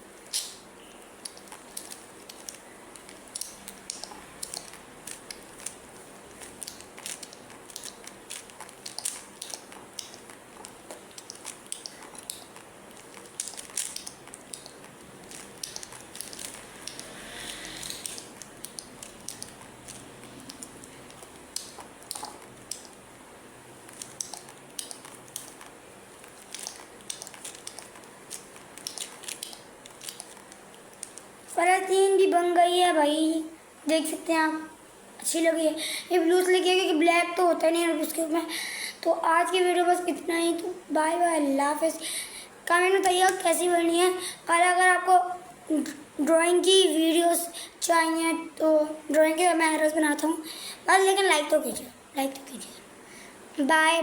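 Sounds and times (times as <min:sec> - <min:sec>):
plastic puzzle cube clicking: 0:00.3 - 0:00.6, 0:01.2 - 0:05.8, 0:06.4 - 0:23.0, 0:23.9 - 0:31.3.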